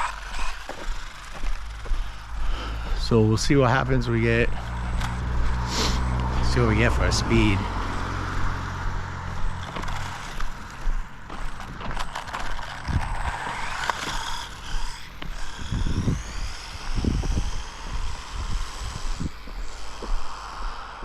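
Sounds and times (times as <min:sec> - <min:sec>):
low thumps: 0:00.0 - 0:20.8
electric motor whining: 0:00.0 - 0:21.0.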